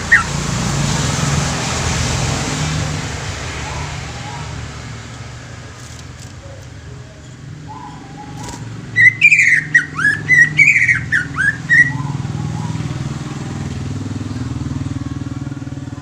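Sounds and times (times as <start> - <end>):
bird singing whistled notes: 7.6 - 12.8.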